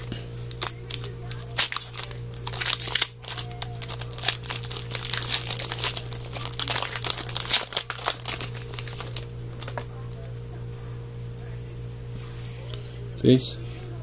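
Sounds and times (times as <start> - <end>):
low electrical hum: 0.0 - 14.0
wrapper crinkling and tearing: 0.4 - 9.9.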